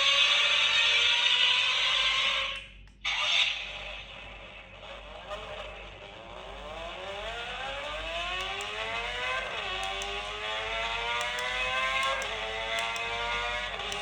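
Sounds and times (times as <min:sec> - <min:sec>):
engine accelerating through gears: 0:04.8 - 0:14.0.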